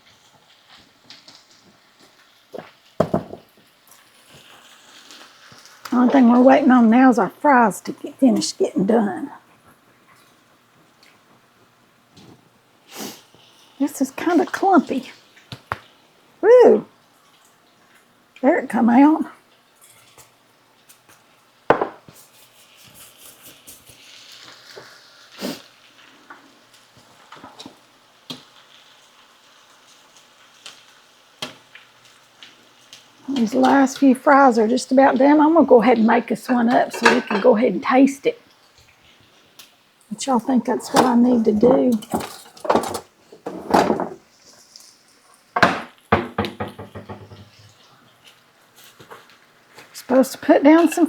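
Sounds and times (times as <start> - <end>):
fries frying in oil: 0.0 - 51.0
sharp kitchen knocks: 3.0 - 3.5, 21.7 - 22.1, 42.6 - 44.2, 45.6 - 47.6
dishes and utensils clicking: 36.2 - 37.6, 45.7 - 47.7
rustle: 44.2 - 45.6.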